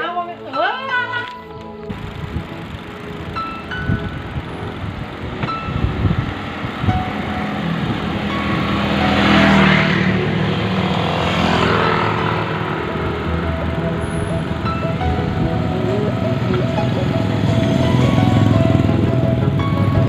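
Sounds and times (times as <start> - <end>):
background music: 0.0 - 20.0
road traffic passing: 0.0 - 20.0.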